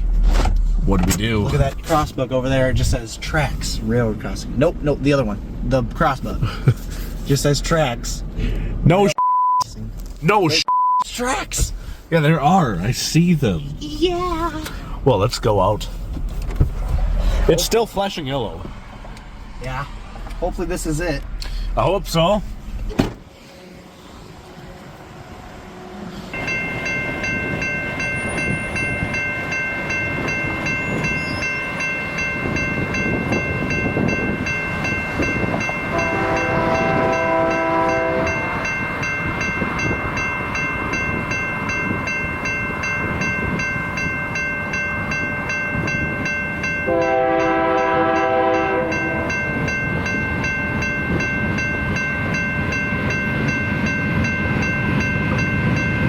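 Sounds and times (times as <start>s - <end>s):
rumble of train: 0.0s - 8.9s, 11.2s - 56.0s
crossing bell ringing: 26.3s - 56.0s
train horn blasts: 35.8s - 38.7s, 46.8s - 49.4s.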